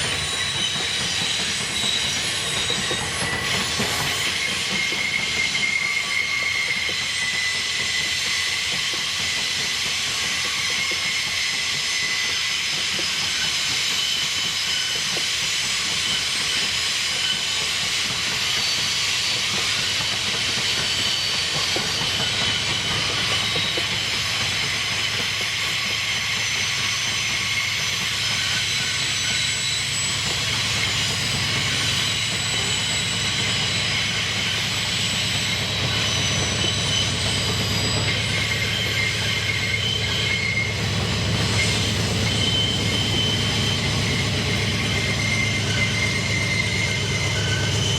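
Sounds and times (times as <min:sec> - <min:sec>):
train wheels squealing on rails: 0:00.0 - 0:47.9
low train rumble: 0:14.4 - 0:47.9.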